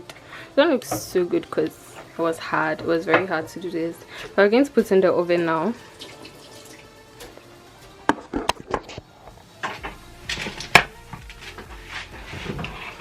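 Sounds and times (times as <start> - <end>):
dishes and utensils clattering: 9.6 - 10.9.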